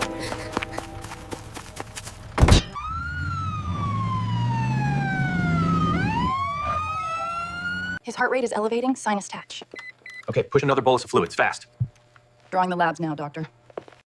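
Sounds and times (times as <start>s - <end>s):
loud thump: 2.4s - 2.8s
ambulance siren wailing: 2.7s - 8.0s.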